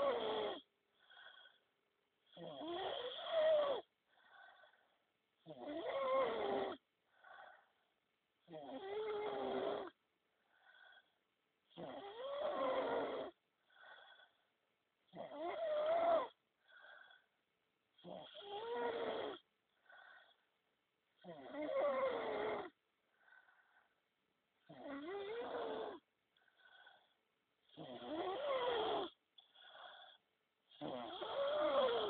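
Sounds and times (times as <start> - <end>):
man snoring loudly: 0.0 - 1.6, 2.3 - 4.8, 8.5 - 9.9, 11.7 - 14.2, 15.1 - 17.2, 18.0 - 20.2, 24.7 - 26.0, 27.7 - 32.0
faint breath sound: 23.0 - 24.1.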